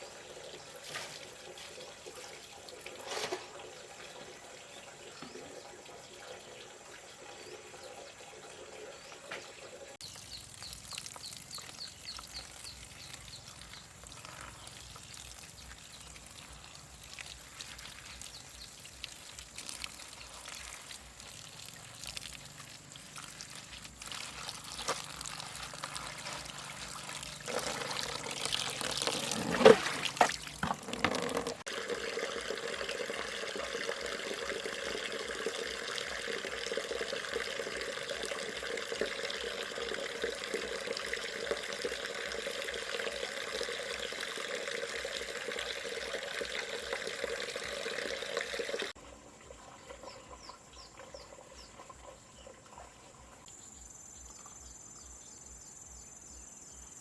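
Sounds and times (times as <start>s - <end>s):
water pouring from bamboo pipe: 0.0s - 53.4s.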